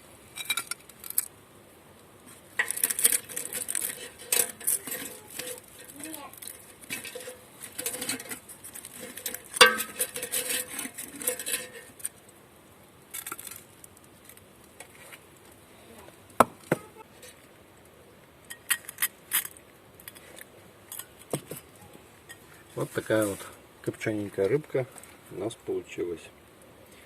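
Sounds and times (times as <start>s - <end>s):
tableware clinking and clattering: 9.6s - 10.6s.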